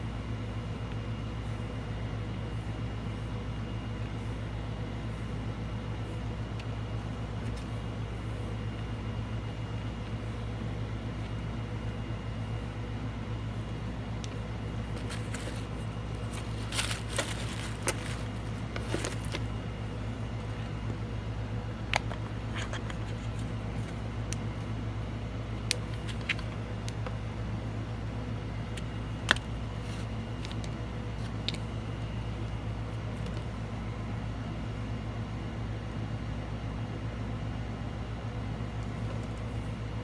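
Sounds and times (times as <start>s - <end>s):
air conditioner humming: 0.0s - 40.0s
clicks of small objects handled: 14.2s - 19.5s
light rustles: 14.3s - 19.6s.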